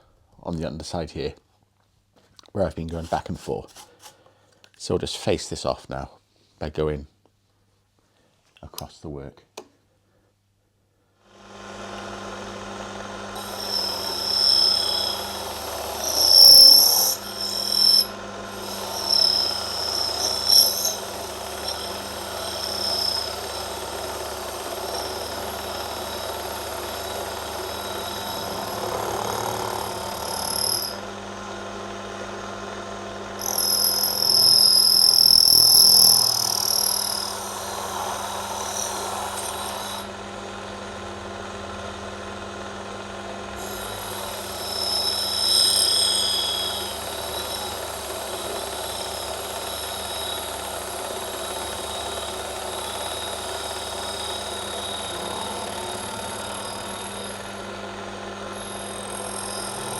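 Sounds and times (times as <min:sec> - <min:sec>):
lathe motor hum: 0:11.3 - 0:59.9
high-pitched cutting squeal: 0:13.4 - 0:31.0, 0:33.4 - 0:40.1, 0:43.6 - 0:57.8, 0:58.6 - 0:59.9.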